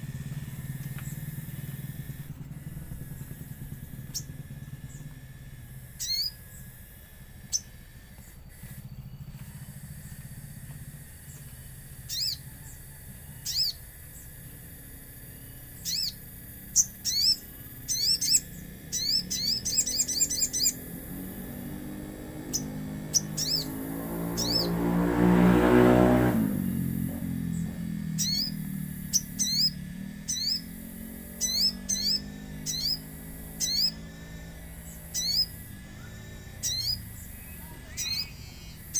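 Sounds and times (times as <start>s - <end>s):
passing vehicle: 0.0s - 13.4s, 14.4s - 38.9s
songbird chirps: 6.0s - 6.8s, 11.2s - 14.5s, 15.3s - 26.3s, 27.0s - 38.9s.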